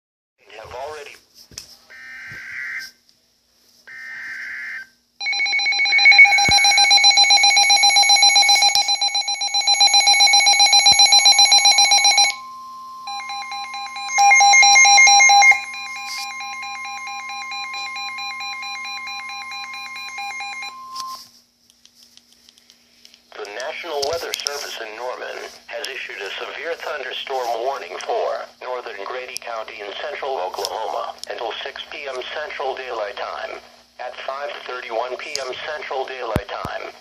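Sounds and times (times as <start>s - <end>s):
rapidly pulsing alarm tone: 1.9s - 2.9s, 3.9s - 21.2s
warbling data bursts: 13.2s - 17.8s.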